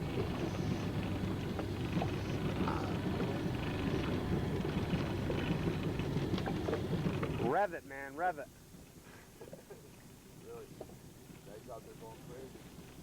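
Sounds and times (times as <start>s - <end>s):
choppy water: 0.0s - 7.6s
outboard motor running: 0.0s - 13.0s
wind: 0.0s - 13.0s.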